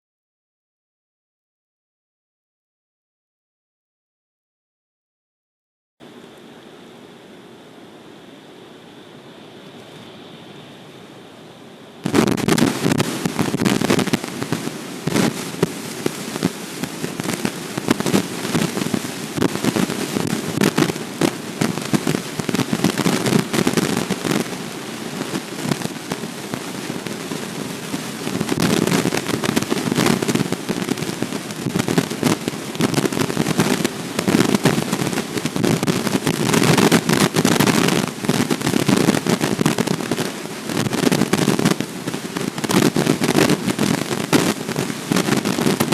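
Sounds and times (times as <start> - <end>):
crackle of snow hitting: 12.0 - 45.9
wind buffeting microphone: 12.0 - 45.9.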